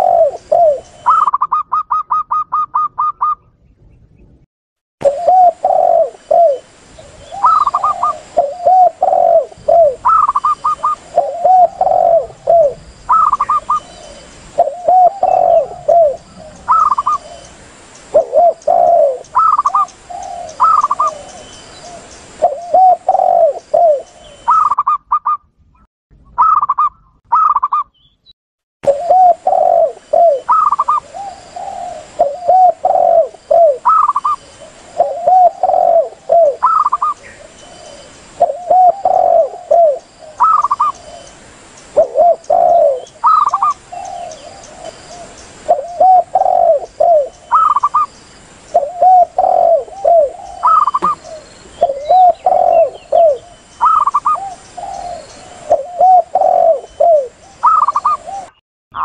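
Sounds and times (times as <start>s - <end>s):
background hiss: 0.0s - 2.6s, 5.0s - 24.9s, 28.9s - 58.6s
low dove cooing: 0.0s - 3.5s, 5.0s - 17.5s, 18.1s - 25.4s, 28.9s - 41.3s, 41.9s - 48.1s, 48.8s - 59.0s
higher short dove coos: 48.8s - 59.0s.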